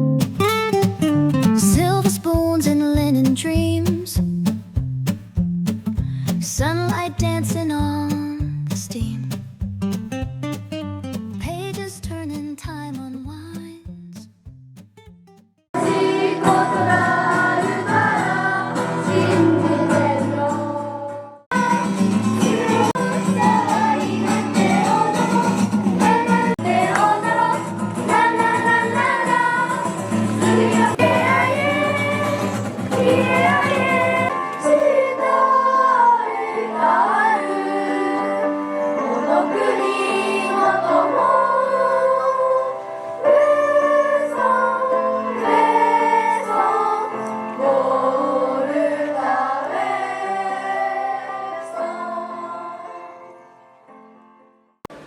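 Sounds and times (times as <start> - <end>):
choir singing: 15.8 - 53.3.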